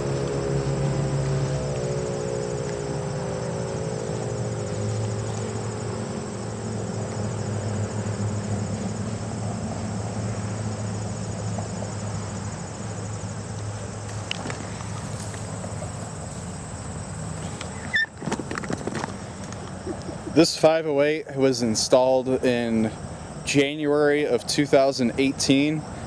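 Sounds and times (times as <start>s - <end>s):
warning siren winding down: 0.0s - 8.4s
crickets chirping: 0.0s - 26.0s.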